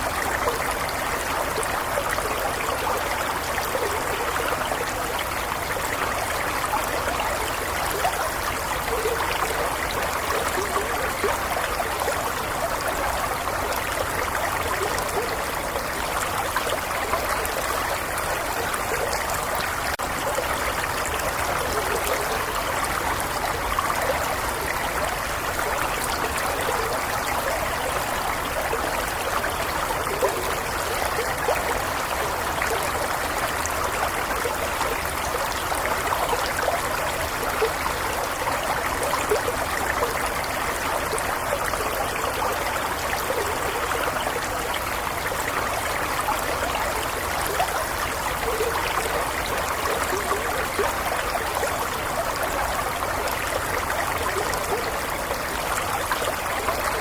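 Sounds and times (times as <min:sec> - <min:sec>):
stream babbling over stones: 0:00.0 - 0:57.0.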